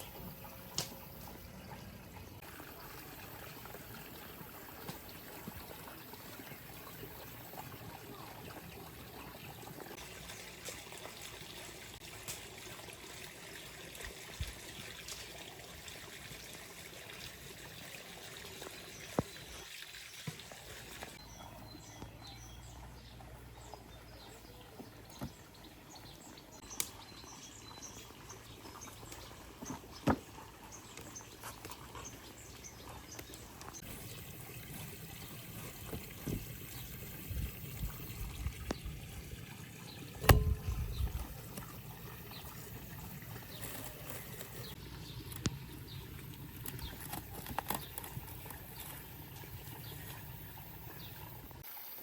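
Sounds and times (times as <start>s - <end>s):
water trickling: 0.0s - 51.9s
loud thump: 40.2s - 41.2s.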